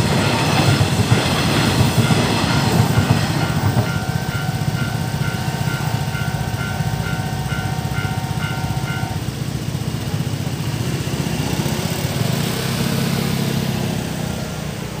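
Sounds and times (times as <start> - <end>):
level crossing warning alarm: 1.9 - 9.4.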